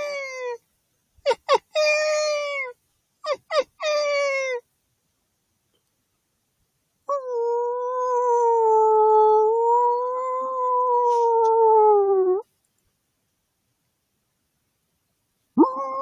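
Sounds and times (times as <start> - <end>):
long wolf-style howl: 7.1 - 12.5, 15.6 - 16.0.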